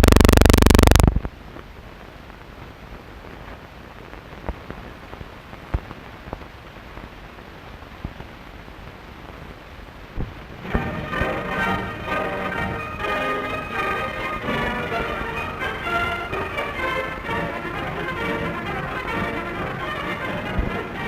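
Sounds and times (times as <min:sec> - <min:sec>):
clicks and pops: 0:00.0 - 0:01.3
loud buzzing tone: 0:00.0 - 0:01.3
film hiss: 0:00.0 - 0:21.0.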